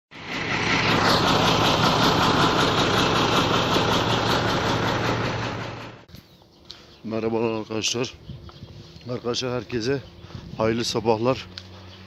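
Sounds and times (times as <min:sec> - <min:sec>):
diesel truck engine idling: 0:00.2 - 0:06.1.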